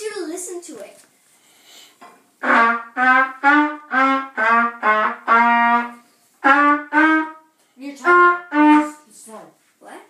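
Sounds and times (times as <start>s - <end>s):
trumpet notes: 2.4s - 9.0s.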